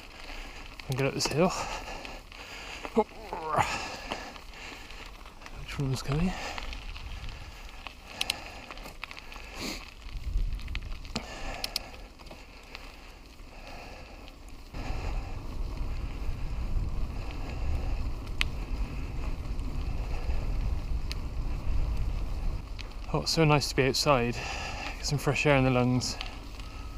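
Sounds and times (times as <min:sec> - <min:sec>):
scattered clicks and ticks: 0:00.0 - 0:14.7, 0:17.2 - 0:26.9
wind buffeting microphone: 0:04.6 - 0:11.8, 0:14.7 - 0:26.9.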